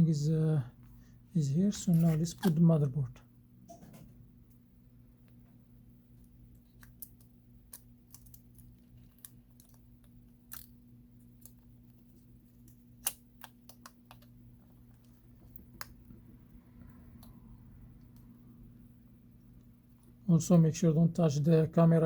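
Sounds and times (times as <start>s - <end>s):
faint steady hum: 0.0s - 22.0s
small parts clicking and tapping: 6.2s - 16.0s.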